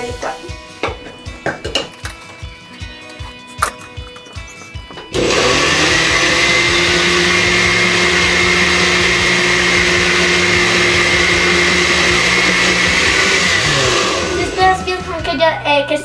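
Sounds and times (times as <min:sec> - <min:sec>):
blender motor whine: 0:05.1 - 0:15.3.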